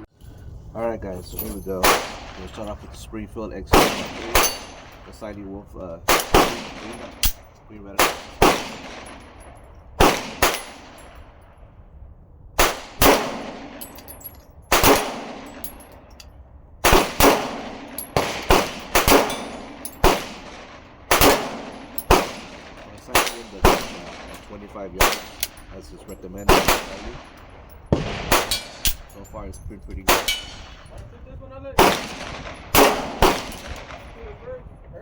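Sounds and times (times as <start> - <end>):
pistol shots with echo: 1.8 - 2.6, 3.7 - 5.4, 6.0 - 11.4, 12.6 - 16.2, 16.8 - 29.2, 30.0 - 31.0, 31.8 - 34.4.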